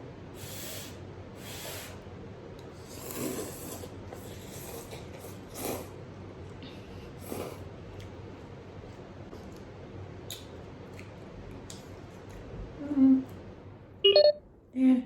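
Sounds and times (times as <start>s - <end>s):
noodles slurped and chewed: 2.7s - 6.0s, 7.1s - 8.1s.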